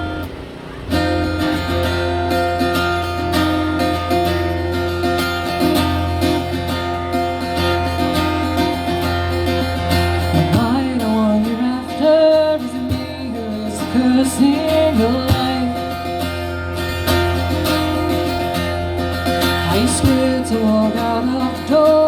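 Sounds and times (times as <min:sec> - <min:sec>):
acoustic guitar strumming: 0:00.0 - 0:22.0
person singing: 0:10.2 - 0:16.1, 0:19.6 - 0:22.0.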